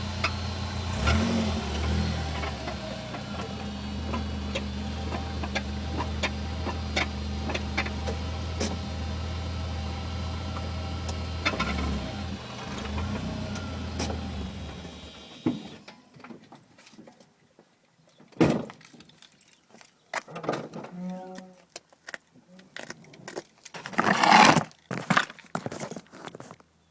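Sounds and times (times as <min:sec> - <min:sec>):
car engine idling: 0:00.0 - 0:15.8.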